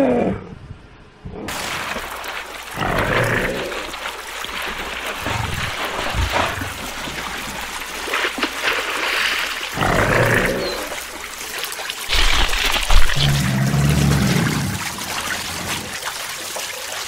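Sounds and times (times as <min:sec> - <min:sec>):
water hissing: 0:01.5 - 0:16.4
crocodile growling: 0:02.7 - 0:04.0, 0:09.7 - 0:11.1, 0:12.1 - 0:16.0.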